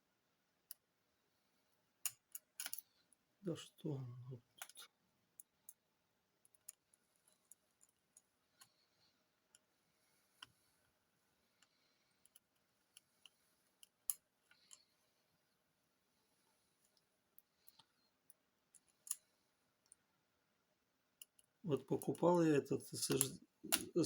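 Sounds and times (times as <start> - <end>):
small parts clicking: 2.0 - 3.2, 4.6 - 5.8, 16.8 - 20.0.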